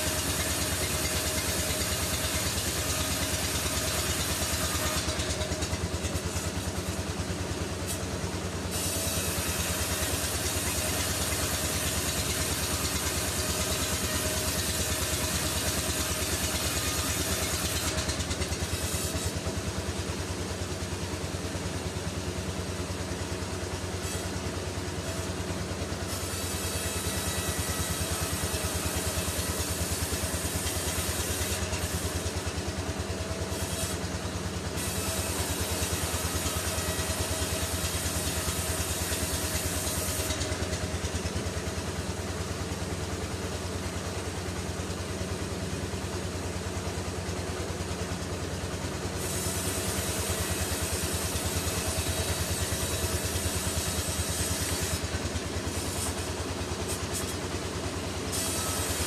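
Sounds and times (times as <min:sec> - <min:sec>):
sawmill machinery droning: 0:00.0 - 0:59.0.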